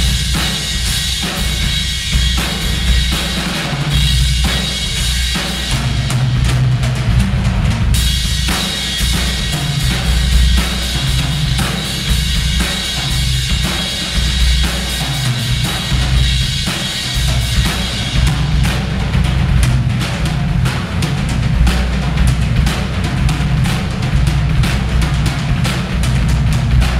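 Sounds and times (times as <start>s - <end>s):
bass drum: 0.0s - 26.9s.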